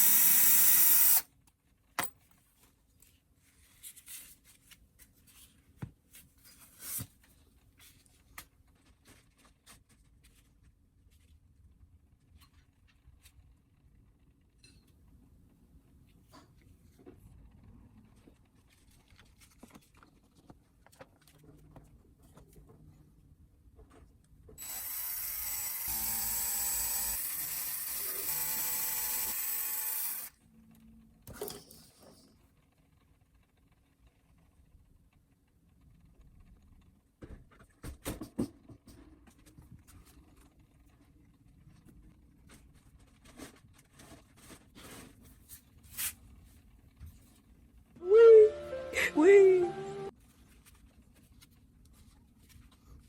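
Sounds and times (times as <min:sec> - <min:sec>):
small power tool spinning: 0:00.0 - 0:01.3, 0:24.6 - 0:30.3
faint scrapes and rustles: 0:02.3 - 0:14.6, 0:15.9 - 0:23.2, 0:38.9 - 0:47.8.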